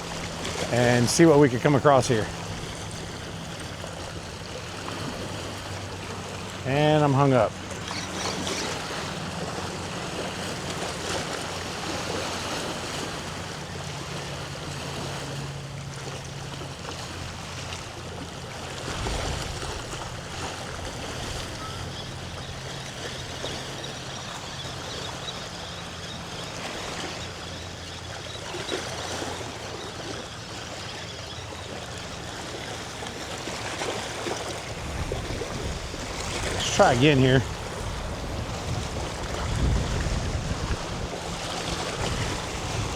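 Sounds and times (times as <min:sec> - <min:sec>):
water lapping along shoreline: 0:00.0 - 0:42.9
wind buffeting microphone: 0:34.7 - 0:42.9.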